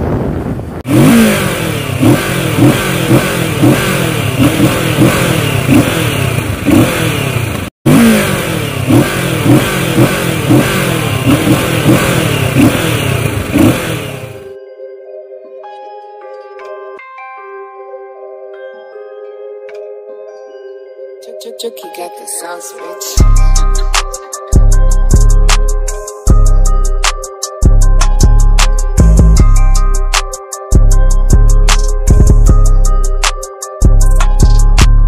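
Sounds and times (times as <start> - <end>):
motorcycle engine revving: 0.7 - 14.5.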